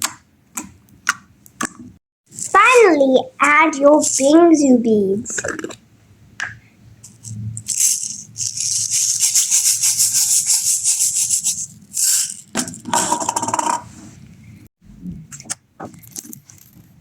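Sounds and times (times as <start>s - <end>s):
plastic beads rattling: 7.0s - 13.7s.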